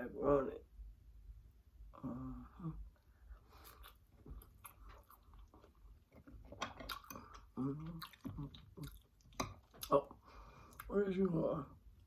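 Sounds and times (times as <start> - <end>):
wet chewing mouth sounds: 3.5 - 10.9.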